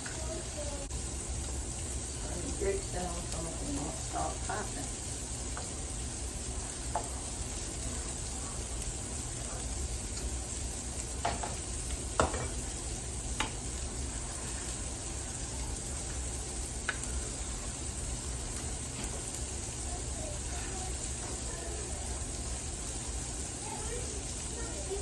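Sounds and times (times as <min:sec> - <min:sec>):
sausage sizzling in a pan: 0:00.0 - 0:25.0
cookware clacking: 0:12.2 - 0:12.6.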